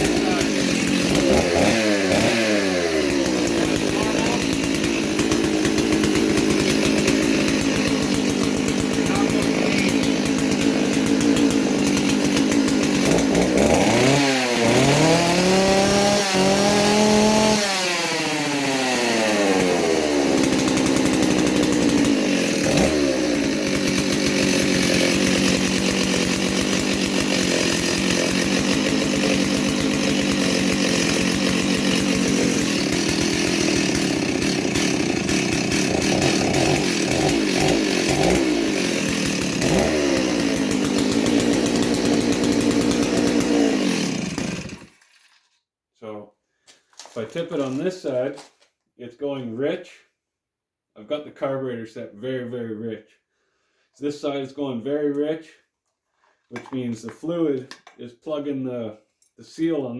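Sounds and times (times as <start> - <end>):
chainsaw engine revving: 0.0 - 45.4.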